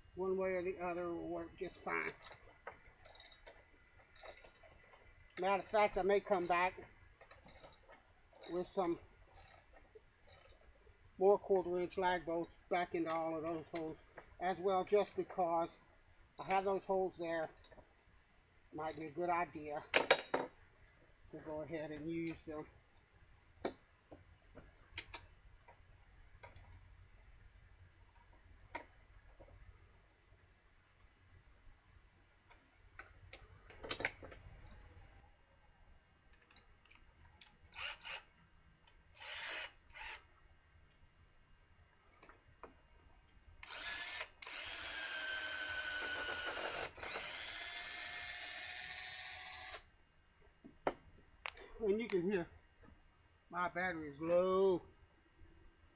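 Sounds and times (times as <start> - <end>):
cricket chirping: 0.0 - 55.9
cordless drill running: 37.8 - 38.2, 39.2 - 40.2, 43.6 - 49.9.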